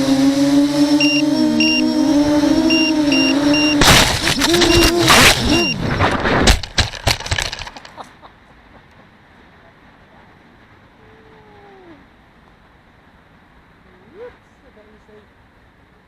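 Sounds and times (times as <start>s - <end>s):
drone motors whining: 0.0s - 6.6s
drone crashing through branches: 3.7s - 7.9s.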